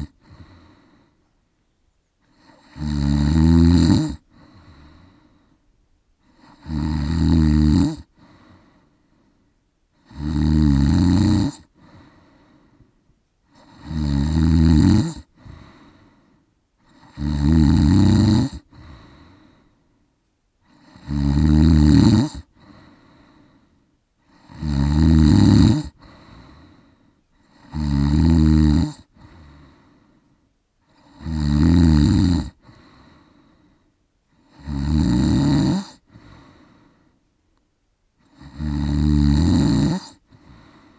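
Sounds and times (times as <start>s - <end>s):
man snoring: 0.0s - 1.2s, 2.2s - 5.4s, 6.2s - 8.8s, 10.0s - 12.8s, 13.5s - 19.7s, 20.6s - 23.6s, 24.2s - 30.0s, 30.8s - 33.6s, 34.3s - 37.0s, 38.2s - 40.9s
soft breath: 0.1s - 2.6s, 4.2s - 6.6s, 8.1s - 10.0s, 11.7s - 13.8s, 15.3s - 17.0s, 18.6s - 20.8s, 22.4s - 24.4s, 25.9s - 27.5s, 29.0s - 31.2s, 32.6s - 34.6s, 36.0s - 37.4s, 40.2s - 40.9s.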